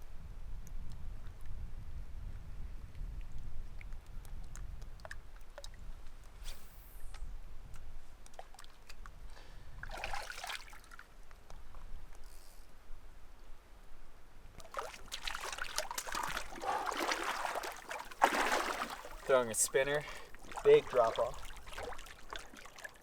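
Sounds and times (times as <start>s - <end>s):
water splashing and trickling: 8.2s - 11.6s, 14.5s - 23.0s.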